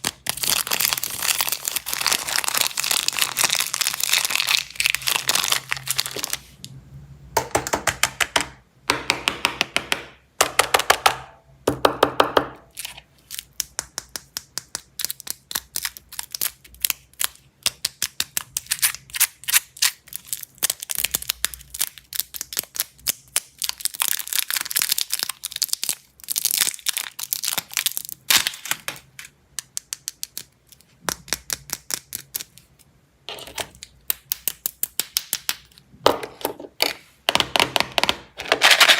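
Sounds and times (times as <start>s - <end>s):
plastic candy wrappers crackling: 0.0s - 6.6s, 12.7s - 32.7s, 38.5s - 38.9s.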